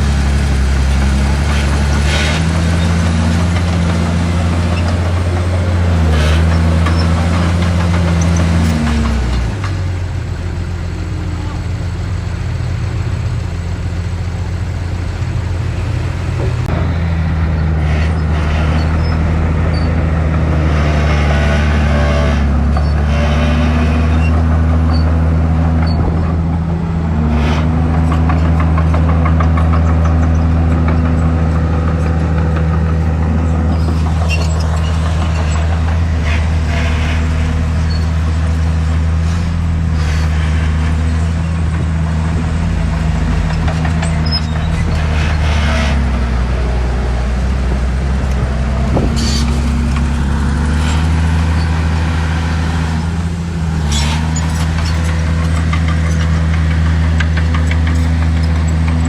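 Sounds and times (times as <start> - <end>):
diesel engine running: 0.0 - 59.0
metal clanks and rattles: 27.9 - 53.0.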